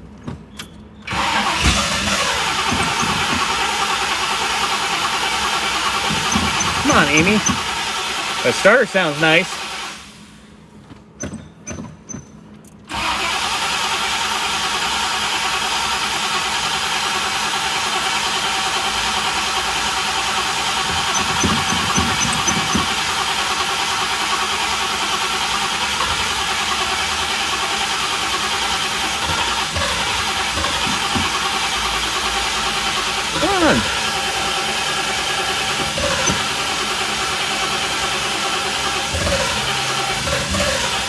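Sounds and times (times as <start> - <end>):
starter motor cranking engine: 1.0 - 10.4, 12.9 - 41.0
starter clicks: 29.0 - 32.3.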